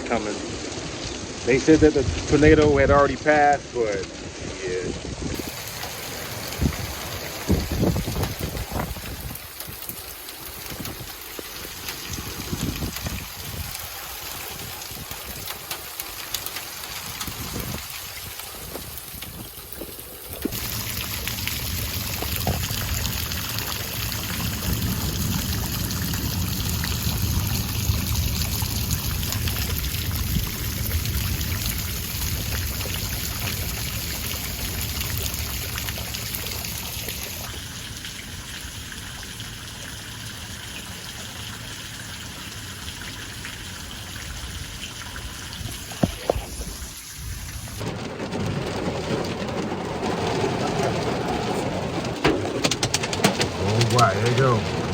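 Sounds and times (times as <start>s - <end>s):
rain hissing: 0.0s - 54.9s
thunder rumble: 5.1s - 19.6s, 20.4s - 38.7s, 44.5s - 54.9s.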